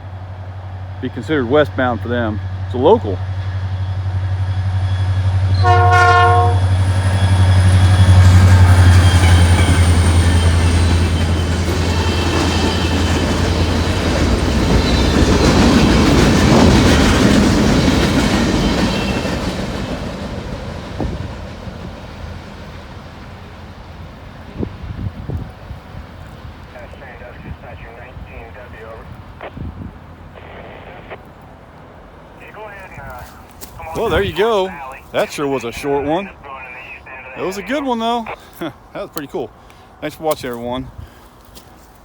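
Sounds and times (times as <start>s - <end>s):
diesel locomotive engine droning: 0.0s - 42.0s
train wheels rumbling and clattering: 2.0s - 26.6s
train horn blast: 5.5s - 9.9s.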